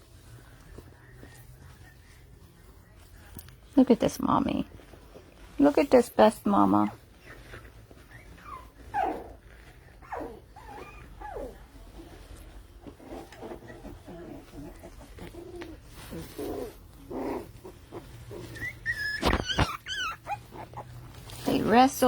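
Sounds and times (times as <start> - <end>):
puppies whining and yipping: 6.8 - 21.9.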